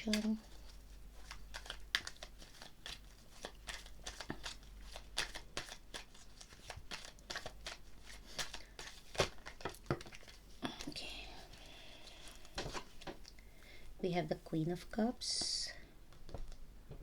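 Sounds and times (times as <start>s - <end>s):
cards being shuffled: 0.0s - 11.5s, 12.2s - 13.3s.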